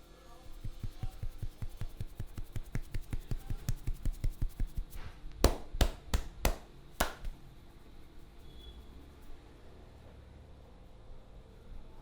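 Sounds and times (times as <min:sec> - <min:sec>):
hands chopping taps on head: 0:00.6 - 0:07.4
sharp hand slaps: 0:00.6 - 0:07.4.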